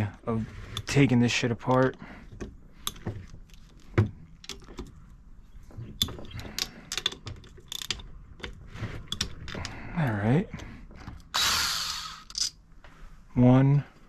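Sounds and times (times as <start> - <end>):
metal tools clicking and clinking: 12.2 - 12.6.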